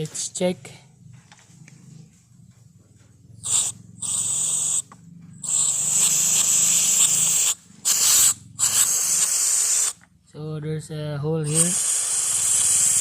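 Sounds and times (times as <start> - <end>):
injector spraying fuel in hissing bursts: 3.4 - 10.0, 11.4 - 13.0.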